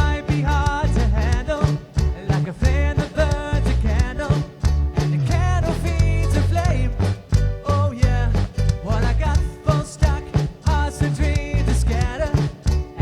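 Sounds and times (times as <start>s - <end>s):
low bass notes: 0.0s - 13.0s
person singing lead vocal: 0.0s - 13.0s
strummed ukuleles: 0.0s - 13.0s.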